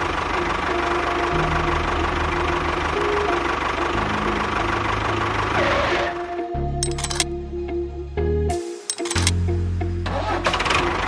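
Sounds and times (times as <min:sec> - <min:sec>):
small engine knocking and rattling: 0:06.8 - 0:07.2, 0:08.9 - 0:09.3.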